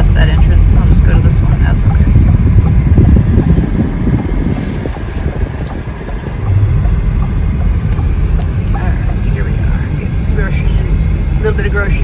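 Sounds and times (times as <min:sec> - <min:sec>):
road and engine rumble: 0:00.0 - 0:12.0
road hiss: 0:03.3 - 0:05.5.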